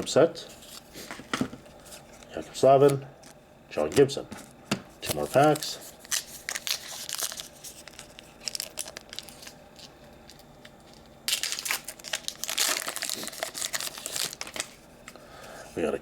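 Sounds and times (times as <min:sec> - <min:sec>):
wrapper crinkling and tearing: 0:05.0 - 0:10.4, 0:11.3 - 0:14.8.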